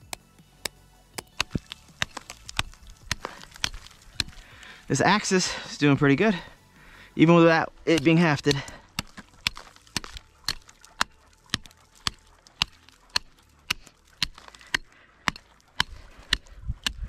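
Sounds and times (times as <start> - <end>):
axe head chopping ice: 1.2 - 4.7, 7.9 - 17.0.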